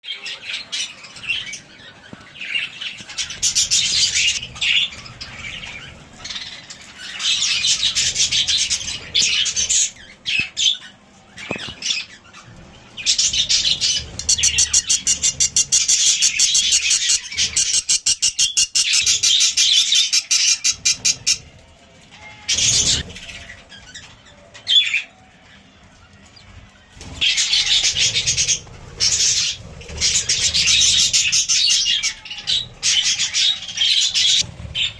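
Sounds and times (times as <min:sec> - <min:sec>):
budgerigar chirping and warbling: 0:13.1 - 0:21.5.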